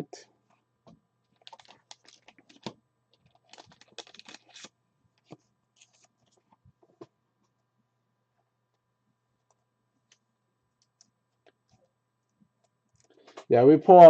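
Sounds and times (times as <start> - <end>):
trading cards rustling and clicking: 1.3 - 7.1.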